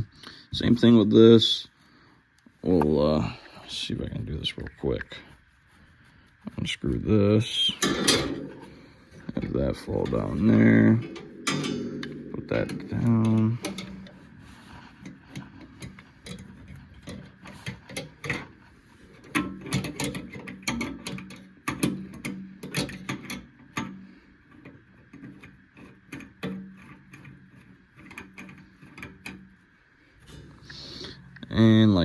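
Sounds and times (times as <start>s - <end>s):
faint steady hum: 0.0s - 32.0s
metal fittings and tools clinking: 7.6s - 14.4s.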